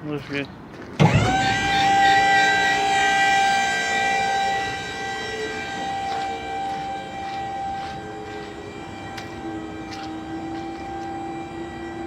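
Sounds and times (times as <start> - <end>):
hydraulic pump whining: 1.0 - 12.0.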